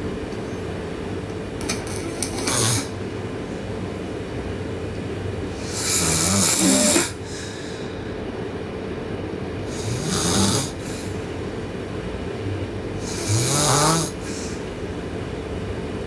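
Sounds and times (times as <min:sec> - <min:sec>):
person snoring: 0:02.4 - 0:03.0, 0:05.6 - 0:07.8, 0:09.7 - 0:11.2, 0:13.0 - 0:14.7.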